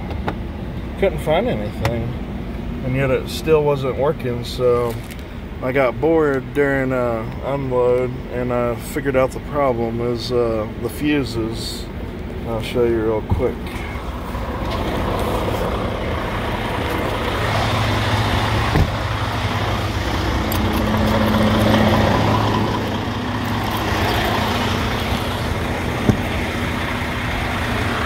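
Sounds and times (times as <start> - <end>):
diesel truck idling: 4.3 - 28.0.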